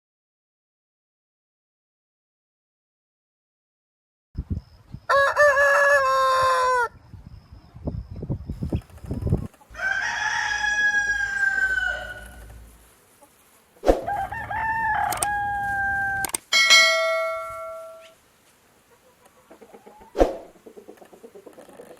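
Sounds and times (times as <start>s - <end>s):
rooster crowing: 5.1s - 6.9s, 9.7s - 12.8s, 14.0s - 16.4s
sharp click: 15.0s - 15.4s, 16.2s - 16.5s
clear ringing tone: 15.6s - 18.1s.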